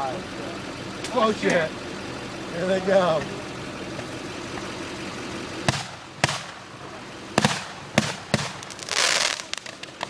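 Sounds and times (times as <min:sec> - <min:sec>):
firework mortar bangs: 0:05.6 - 0:10.0
firework hissing: 0:07.4 - 0:10.0.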